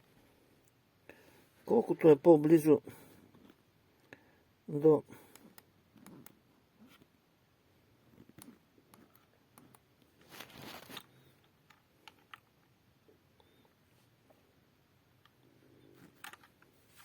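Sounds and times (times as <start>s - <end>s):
brief rustle: 10.2s - 11.2s.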